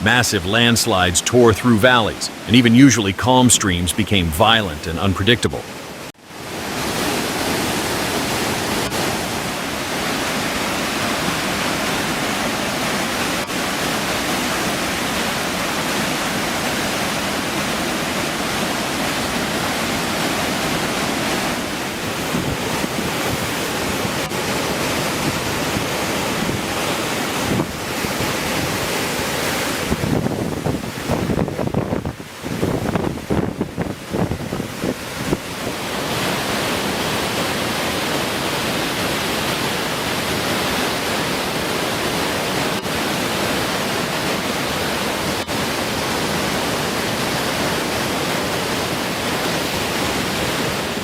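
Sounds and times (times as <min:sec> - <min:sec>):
stream water rushing: 0:00.0 - 0:51.0.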